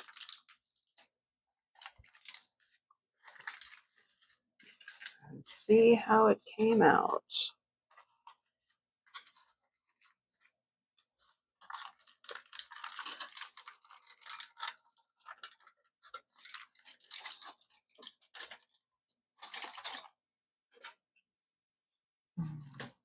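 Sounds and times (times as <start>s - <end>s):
foil crinkling and crackling: 0.0s - 5.3s, 7.8s - 21.0s.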